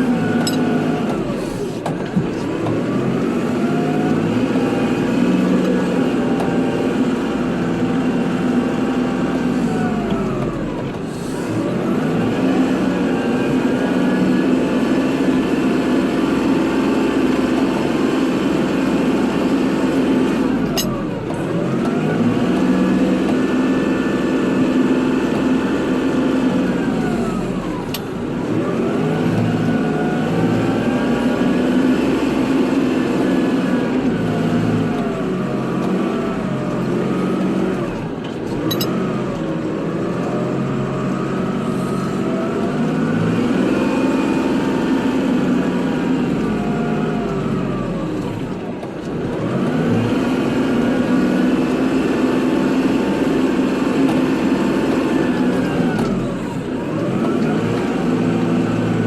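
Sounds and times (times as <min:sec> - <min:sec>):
tractor diesel engine running: 0:00.0 - 0:59.0.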